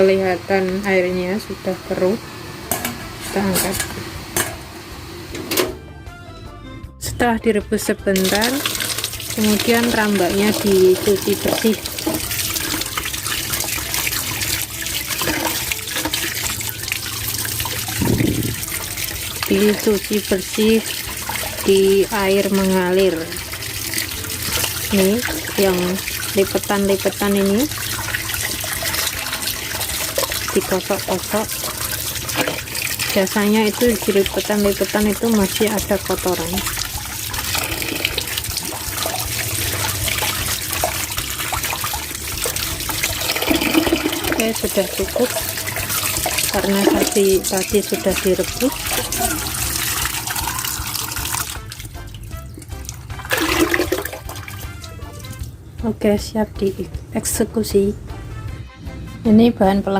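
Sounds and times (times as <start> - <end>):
tap water running: 0.0 - 5.8, 8.1 - 55.6
rinsing by hand: 8.2 - 55.6.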